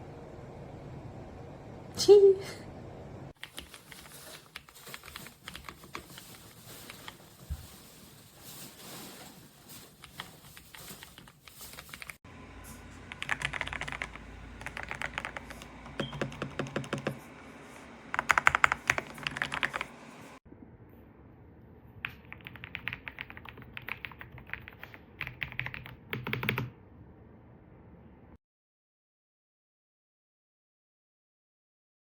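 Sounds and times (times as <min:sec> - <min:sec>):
typing on mechanical keyboard: 0:03.4 - 0:06.4, 0:10.0 - 0:12.2, 0:13.1 - 0:17.2, 0:18.1 - 0:19.9, 0:22.0 - 0:26.7.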